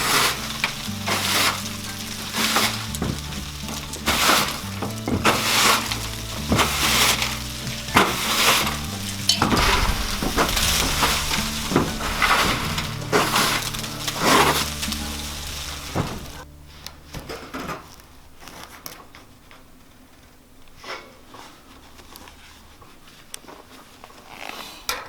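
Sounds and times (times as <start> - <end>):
brushy hissing rhythm: 0.0 - 16.5
low bass line: 0.0 - 17.1.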